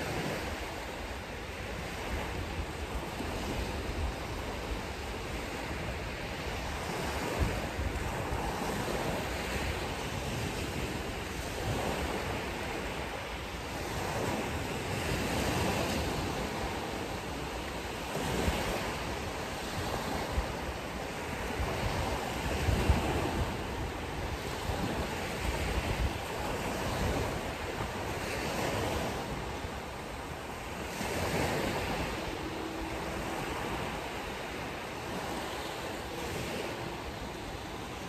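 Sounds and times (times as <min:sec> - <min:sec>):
ocean waves breaking: 0:00.0 - 0:38.0
wind rumbling on microphone: 0:00.0 - 0:38.0.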